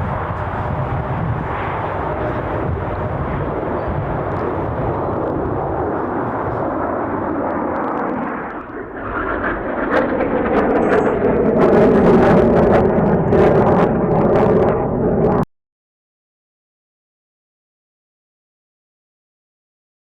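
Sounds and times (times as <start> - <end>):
jet engines roaring overhead: 0.0 - 15.5.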